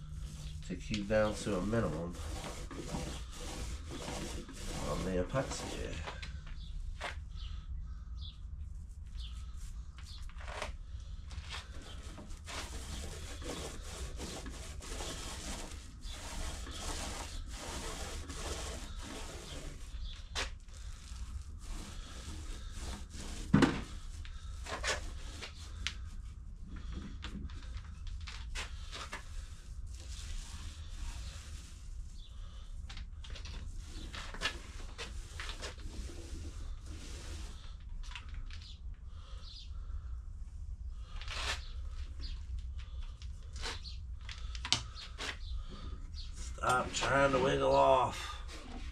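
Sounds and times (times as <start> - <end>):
foam roller sticky rubbing: 0.2 - 6.2, 11.4 - 26.2, 28.5 - 32.6, 33.5 - 37.8.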